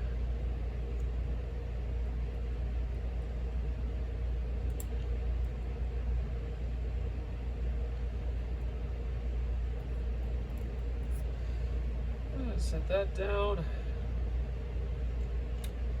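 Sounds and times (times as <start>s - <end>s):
low background rumble: 0.0s - 16.0s.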